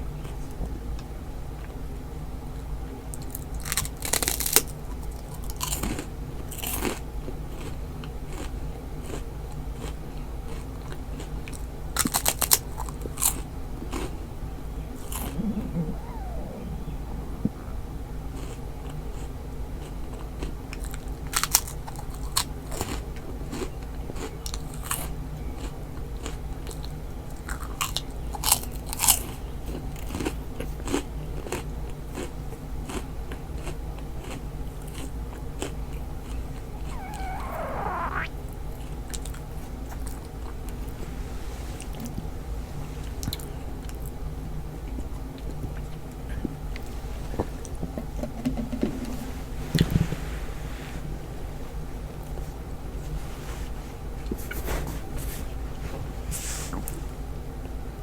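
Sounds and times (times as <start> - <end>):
steady low hum: 14.6 - 19.7
stomach growling: 15.0 - 18.6, 36.8 - 38.3.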